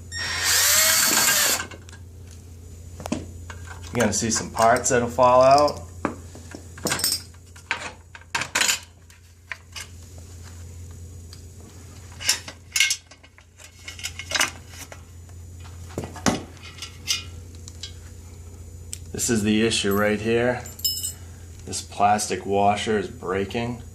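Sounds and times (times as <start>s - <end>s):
steady low hum: 0.0s - 23.9s
small parts clinking and clanking: 19.9s - 21.2s.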